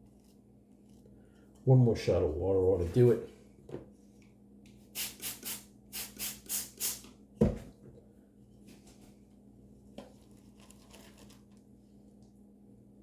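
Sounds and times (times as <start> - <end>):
spray bottle spritzes: 5.0 - 7.1
object set down knock: 7.4 - 7.9.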